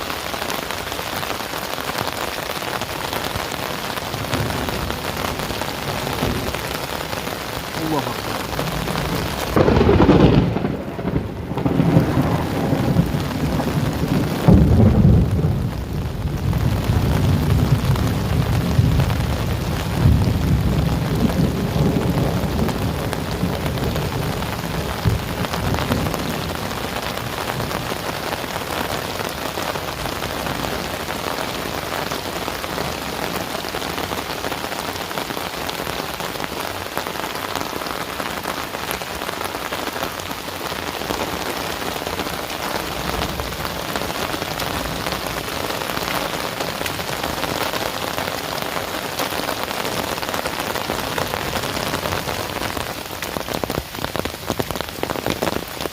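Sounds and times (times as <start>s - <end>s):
heavy rain falling: 0.0s - 55.9s
low thunder rumble: 4.2s - 7.3s, 8.2s - 28.1s.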